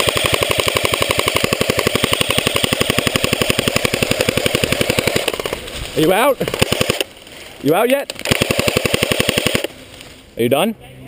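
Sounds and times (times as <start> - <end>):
airsoft gun firing full-auto: 0.0 - 5.7, 6.4 - 7.1, 8.2 - 9.7.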